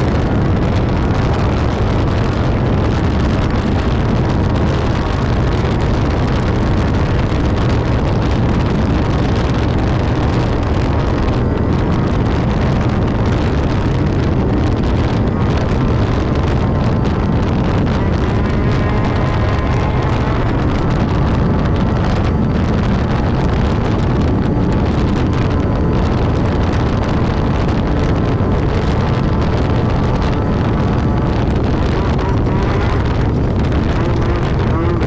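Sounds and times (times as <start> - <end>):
race buggy engine at speed: 0.0 - 35.0
wind buffeting microphone: 0.0 - 35.0.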